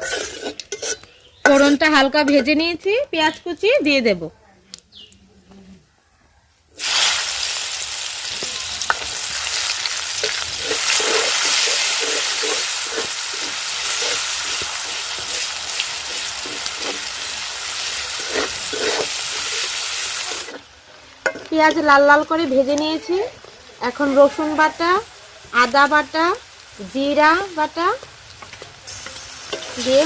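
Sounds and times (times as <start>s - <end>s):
spatula scraping a pan: 0.0s - 2.5s, 10.2s - 20.6s, 28.4s - 30.0s
onions sizzling in hot oil: 0.0s - 3.4s, 6.7s - 30.0s.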